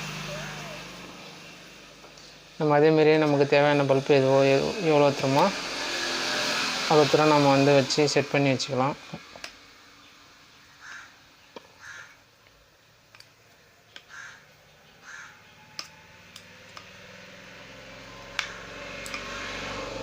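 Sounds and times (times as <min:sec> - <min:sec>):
bird cawing: 0:10.6 - 0:12.3, 0:13.9 - 0:15.8, 0:18.5 - 0:19.6.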